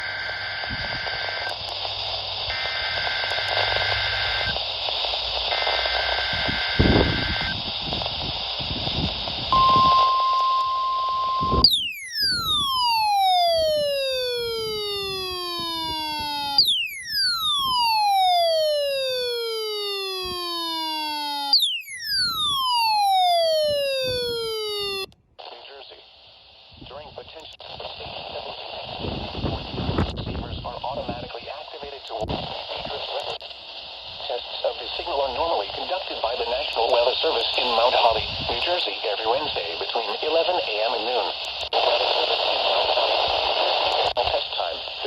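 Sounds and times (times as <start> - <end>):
radio static: 0.0 - 10.5, 11.3 - 45.0
electronic tone sweeping down: 9.5 - 25.1
two-tone warbling data bursts: 9.5 - 25.1
steady alert tone: 9.6 - 25.1.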